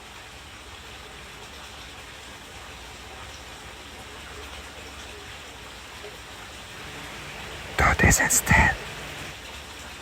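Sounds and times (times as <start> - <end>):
steady hiss: 6.6 - 9.4.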